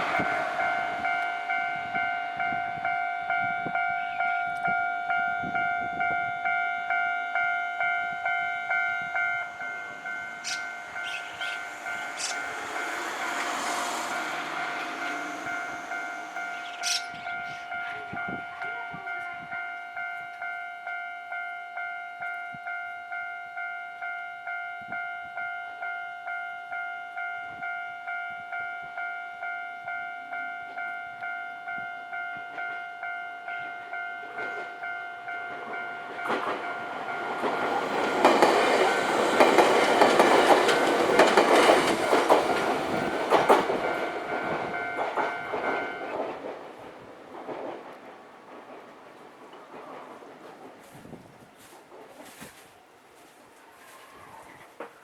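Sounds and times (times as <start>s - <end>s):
level-crossing alarm ringing: 0.0s - 46.4s
train passing: 0.0s - 55.0s
wheels clacking over rail joints: 7.8s - 18.2s, 34.3s - 50.9s.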